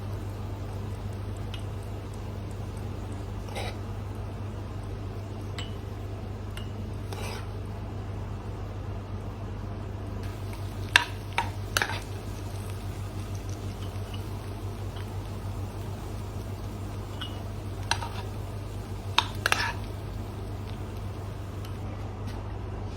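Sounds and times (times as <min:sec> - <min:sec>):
steady low hum: 0:00.0 - 0:22.9
kitchenware clinking: 0:17.1 - 0:18.3.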